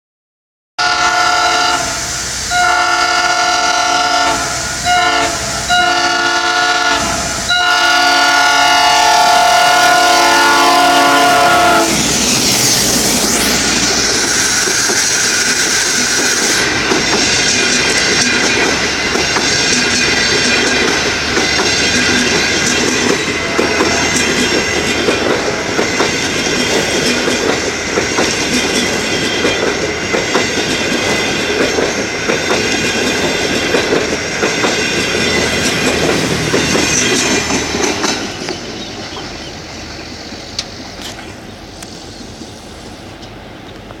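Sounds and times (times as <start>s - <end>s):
train wheels clacking over rail joints: 9.6s - 41.4s
train wheel squeal: 11.7s - 43.0s.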